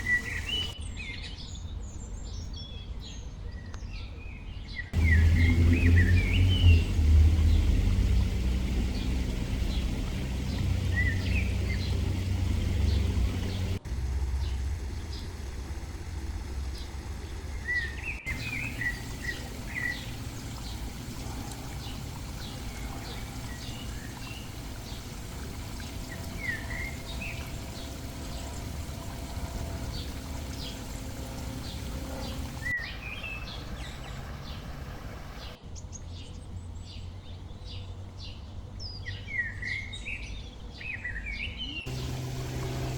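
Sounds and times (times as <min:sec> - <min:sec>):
small birds chirping: 0:00.0 - 0:01.7, 0:04.9 - 0:35.6, 0:40.9 - 0:42.9
steady low background noise: 0:05.0 - 0:35.6.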